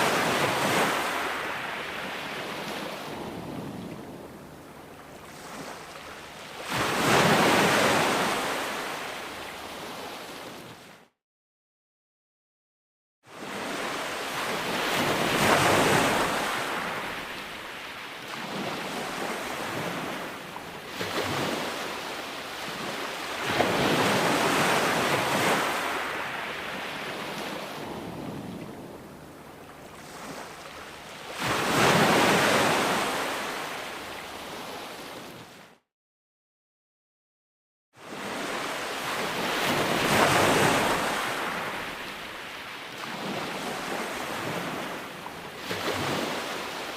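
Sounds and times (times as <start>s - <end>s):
ocean waves breaking on shore: 0.0s - 11.1s, 13.3s - 35.8s, 38.0s - 46.9s.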